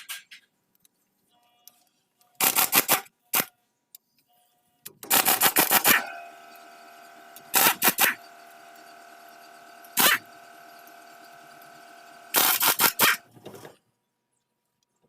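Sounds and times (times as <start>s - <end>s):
rapid sharp clicks and clatters: 2.4s - 3.5s, 5.0s - 6.7s, 7.3s - 13.4s.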